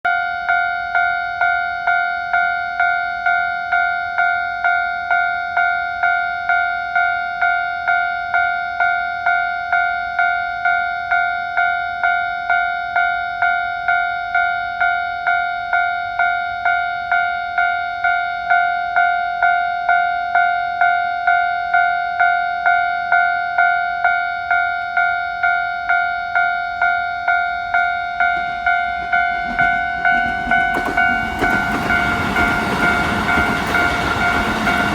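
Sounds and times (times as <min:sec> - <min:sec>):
level crossing warning bell: 0:00.1 - 0:34.9
approaching train: 0:24.5 - 0:34.9.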